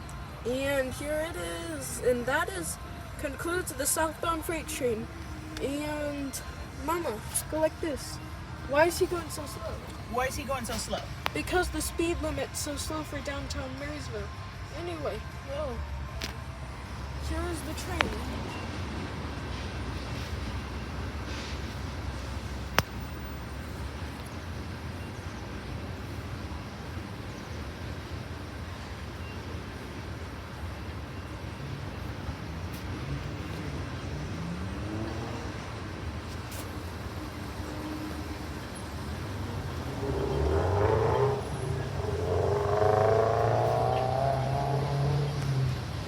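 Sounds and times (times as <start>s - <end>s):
vehicle engine speeding up: 32.4s - 35.8s, 39.3s - 46.0s.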